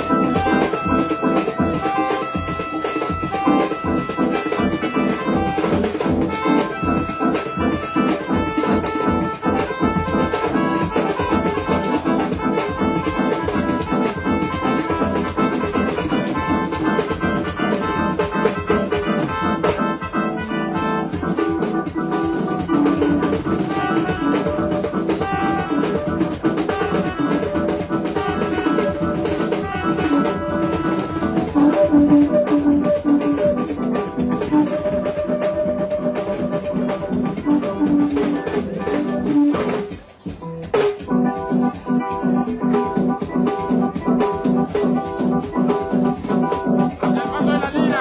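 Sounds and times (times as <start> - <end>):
dance music: 46.4 - 48.0.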